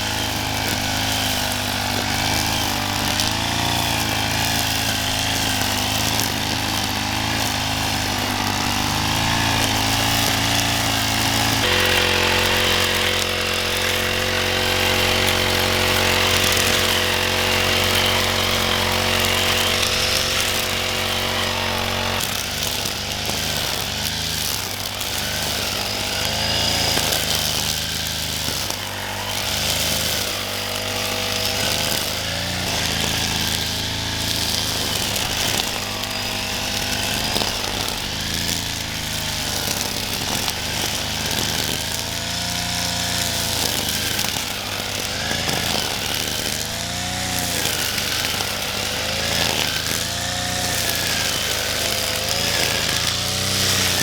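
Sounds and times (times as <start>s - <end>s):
chainsaw engine running: 0.0s - 54.0s.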